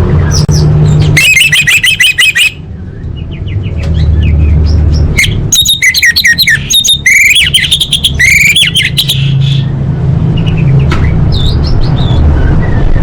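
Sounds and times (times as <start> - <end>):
bird singing whistled notes: 0.2 - 9.7.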